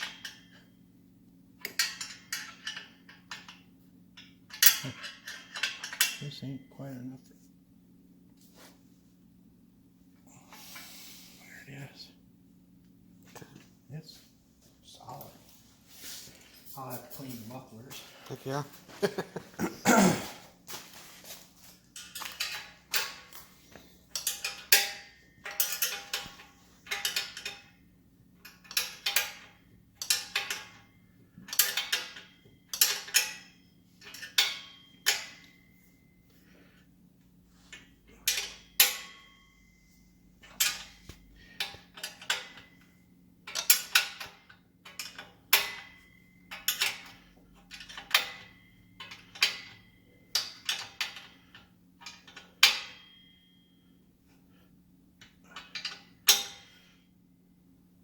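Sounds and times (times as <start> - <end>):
wrench metallic clicks and clinks: 44.9 - 51.3.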